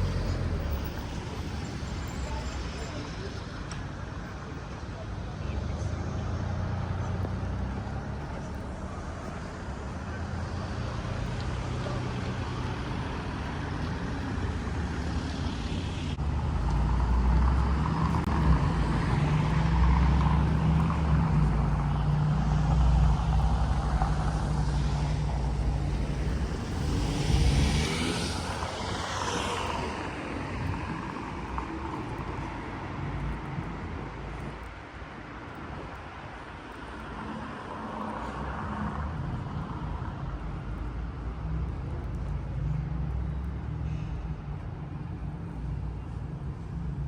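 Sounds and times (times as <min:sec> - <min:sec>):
heavy vehicle engine rumbling: 0:00.0 - 0:36.4
traffic hum: 0:00.0 - 0:47.0
vehicle passing by: 0:05.5 - 0:33.9.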